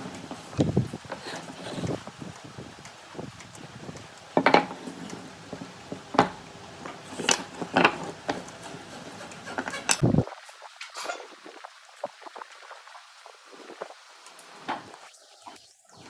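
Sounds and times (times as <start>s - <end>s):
wood and tools knocking: 3.3s - 10.0s.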